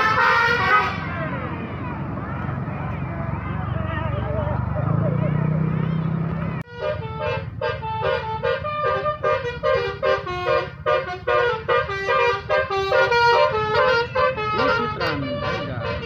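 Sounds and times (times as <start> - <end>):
musical air horn melody: 0.0 - 1.2, 6.7 - 16.0.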